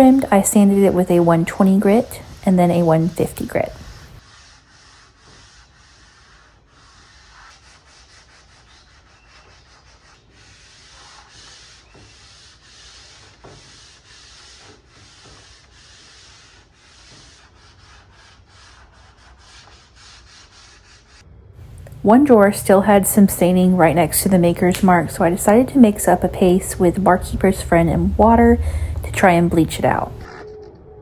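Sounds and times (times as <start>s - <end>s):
sandpaper rubbing on wood: 0.0s - 21.2s.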